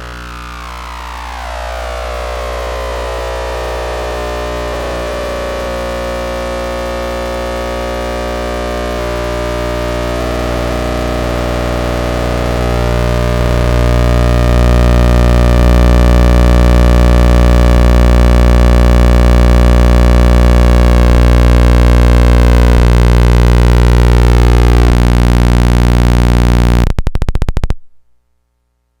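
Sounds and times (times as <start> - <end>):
tube oscillator buzzing: 0.0 - 28.0
rapid stutter of pulses: 20.0 - 28.0.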